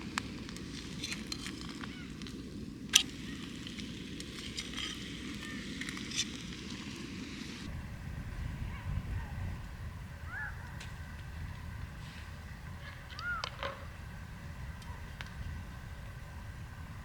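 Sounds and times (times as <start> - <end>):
wood fire crackling: 0.0 - 8.4
low rumble: 7.6 - 17.0.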